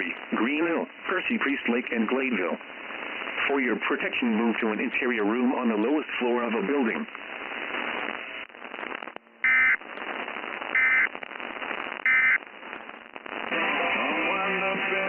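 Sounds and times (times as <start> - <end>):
radio static: 0.0 - 15.0
digital data tone bursts: 9.4 - 9.8, 10.8 - 11.1, 12.0 - 12.4
music: 13.5 - 15.0.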